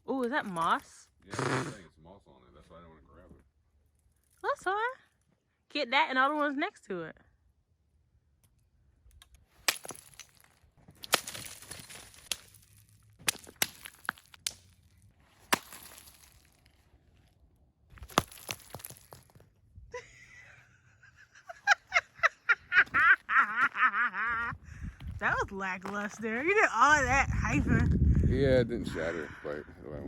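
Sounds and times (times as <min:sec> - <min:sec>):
icicles cracking and crashing: 0:09.1 - 0:19.7.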